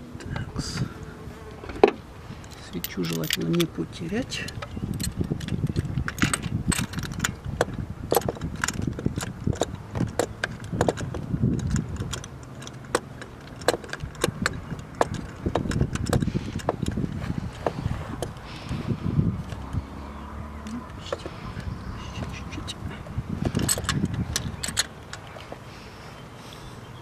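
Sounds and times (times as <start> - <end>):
low handling rumble: 0.0 - 27.0
metallic clinks of hand tools: 2.6 - 3.7.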